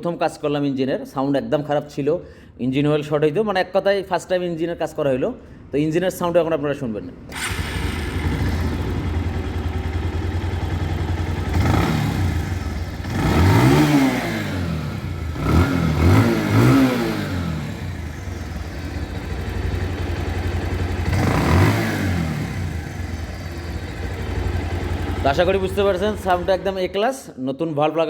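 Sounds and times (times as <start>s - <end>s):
motorcycle engine idling and revving: 7.3s - 27.0s.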